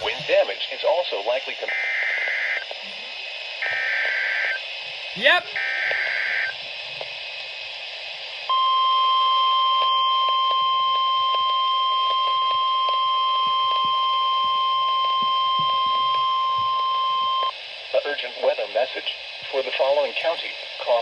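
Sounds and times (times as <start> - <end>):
radio hiss: 0.0 - 21.0
steady warning alarm tone: 1.7 - 2.6, 3.6 - 4.6, 5.2 - 6.6, 8.5 - 17.5
warbling data tones: 5.2 - 6.6.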